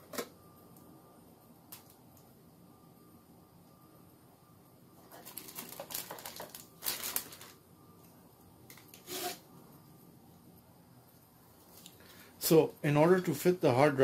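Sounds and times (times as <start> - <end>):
plastic parts clattering: 5.1 - 7.6
plastic parts clicking and rattling: 5.1 - 7.6.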